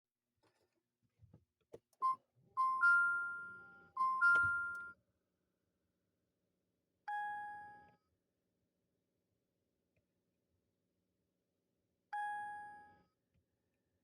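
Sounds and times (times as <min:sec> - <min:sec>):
dashboard warning chime: 0:02.0 - 0:05.0.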